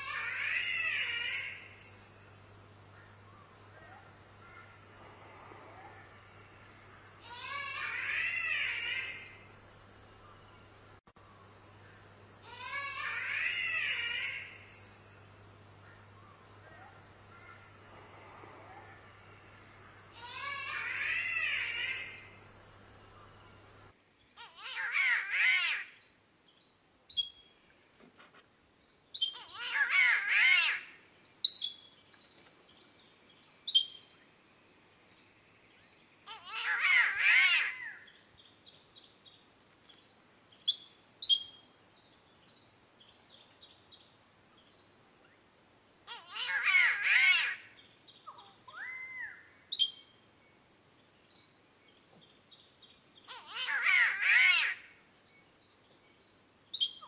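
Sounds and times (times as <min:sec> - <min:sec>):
bird harsh wailing call: 0:00.0 - 0:02.0, 0:07.2 - 0:09.4, 0:12.4 - 0:14.9, 0:20.1 - 0:22.3, 0:36.3 - 0:38.0, 0:46.1 - 0:49.6, 0:53.3 - 0:55.0.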